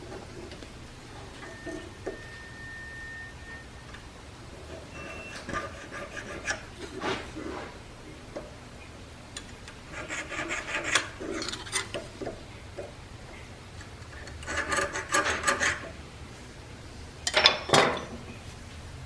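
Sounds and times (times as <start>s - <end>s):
low steady hum: 0.0s - 19.0s
rasping scraping strokes: 5.1s - 7.8s, 9.9s - 11.9s.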